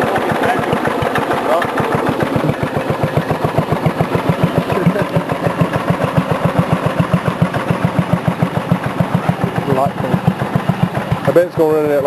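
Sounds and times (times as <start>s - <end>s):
small engine idling with putts: 0.0s - 12.0s.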